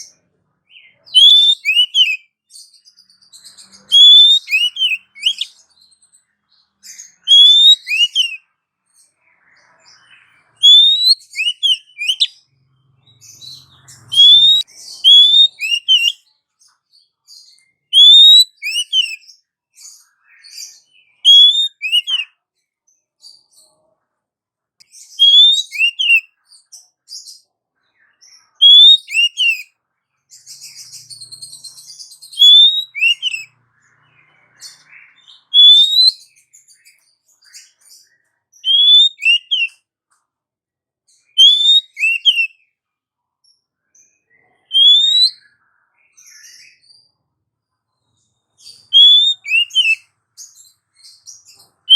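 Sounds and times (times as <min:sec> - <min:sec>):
bird whistled call: 0:00.8 - 0:02.3, 0:03.4 - 0:05.6, 0:06.9 - 0:08.4, 0:10.5 - 0:12.4, 0:13.4 - 0:16.3, 0:17.6 - 0:19.3, 0:20.2 - 0:22.3, 0:25.1 - 0:26.4, 0:28.4 - 0:29.7, 0:30.6 - 0:37.0, 0:38.6 - 0:39.8, 0:41.3 - 0:42.6, 0:44.6 - 0:45.6, 0:48.6 - 0:50.1.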